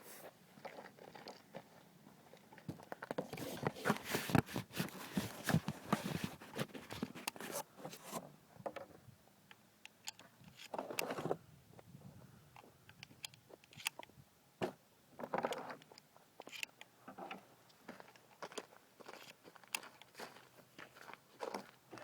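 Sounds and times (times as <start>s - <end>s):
footsteps crunching on rough ground: 17.9s - 22.0s.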